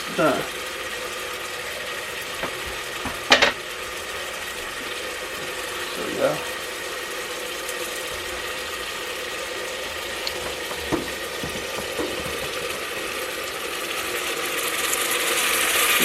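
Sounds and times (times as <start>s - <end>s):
meat sizzling: 0.0s - 16.0s.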